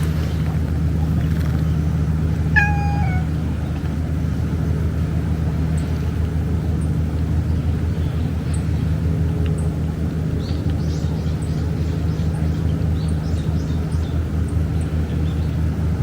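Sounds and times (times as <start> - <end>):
steady low rumble: 0.0 - 16.0
cat meowing: 2.5 - 3.4.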